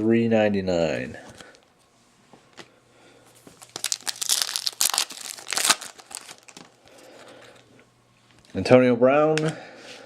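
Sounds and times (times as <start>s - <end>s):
foil wrapper tearing and crinkling: 3.6s - 6.8s.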